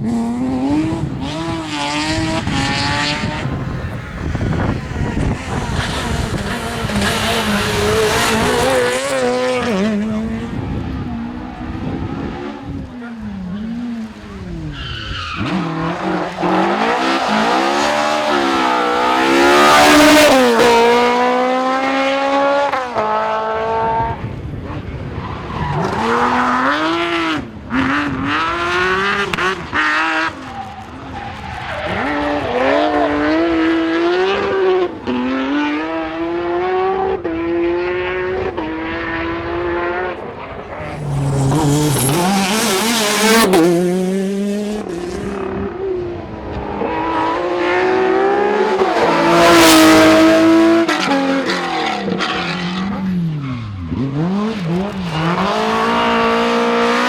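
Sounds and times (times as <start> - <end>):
rally car engines revving: 0.0 - 57.0
tyres sliding: 16.1 - 21.2.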